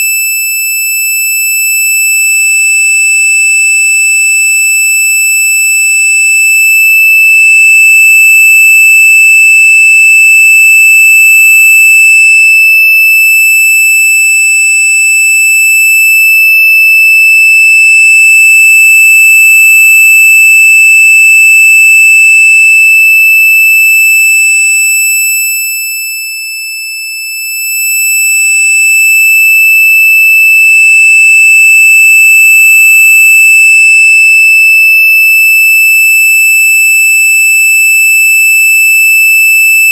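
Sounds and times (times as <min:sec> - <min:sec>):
high-pitched electronic tone: 0:07.4 - 0:10.7, 0:17.3 - 0:20.5.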